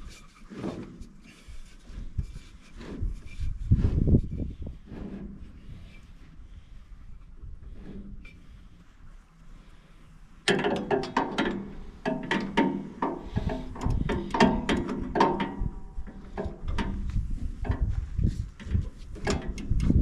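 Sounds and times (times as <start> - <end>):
hand tools clanking on metal: 10.5 - 17.9.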